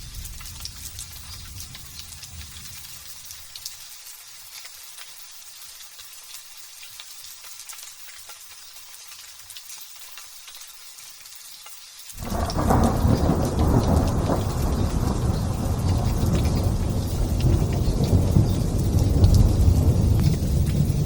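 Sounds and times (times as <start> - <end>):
light drizzle pattering: 0.0 - 21.0
deep rumble of thunder: 12.2 - 21.0.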